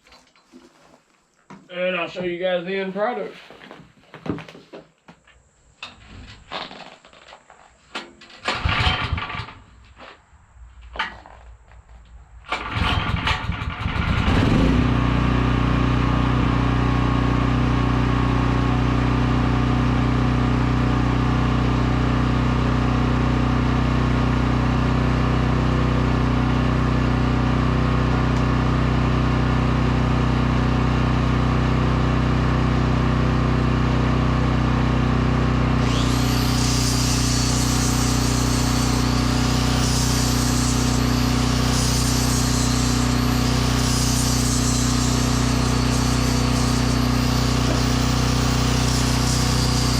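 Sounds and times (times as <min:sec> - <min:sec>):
generator engine running: 0:08.5 - 0:09.6, 0:12.5 - 0:49.9
power tool whine: 0:34.6 - 0:49.9.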